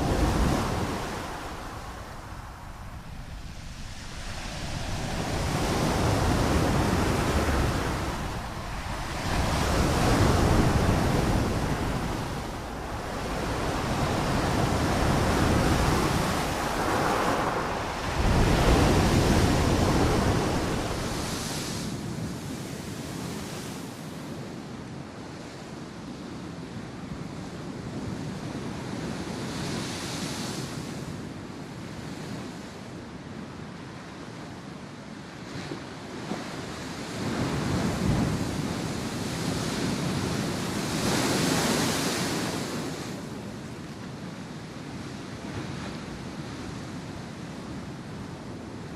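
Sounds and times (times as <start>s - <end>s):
ocean waves breaking: 0.0s - 22.3s, 36.2s - 44.0s.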